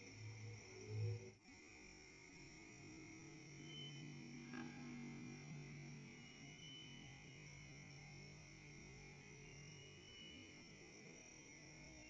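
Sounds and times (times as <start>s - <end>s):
crickets chirring: 3.6s - 4.4s, 5.5s - 11.1s.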